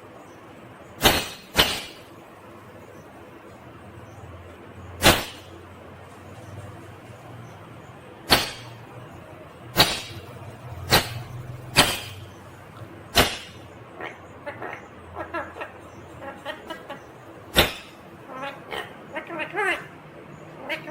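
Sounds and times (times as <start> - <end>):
parakeet sharp calls: 1.0 - 2.2, 5.0 - 5.7, 7.4 - 20.9
parakeet rapid chattering: 5.0 - 20.0.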